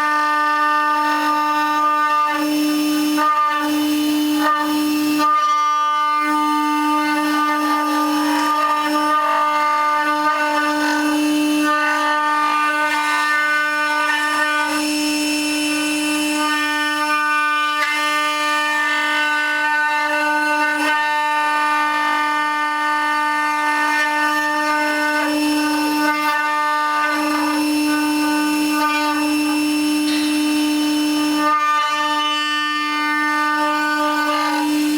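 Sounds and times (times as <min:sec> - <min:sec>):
router spindle whining: 0:00.0 - 0:34.9.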